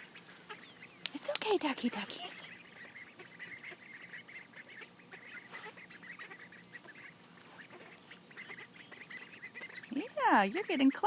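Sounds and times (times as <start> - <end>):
ducklings peeping: 0.0 - 11.0.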